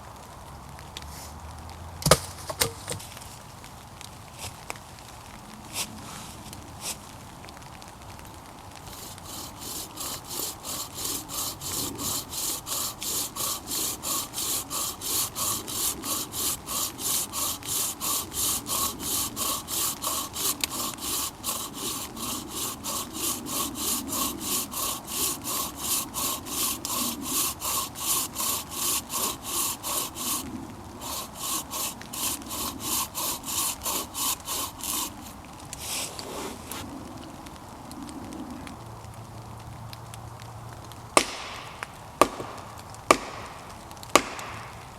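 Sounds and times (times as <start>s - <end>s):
bow saw cutting wood: 2.0s - 3.2s, 6.8s - 7.0s, 8.8s - 36.9s, 41.2s - 41.4s, 42.2s - 44.7s.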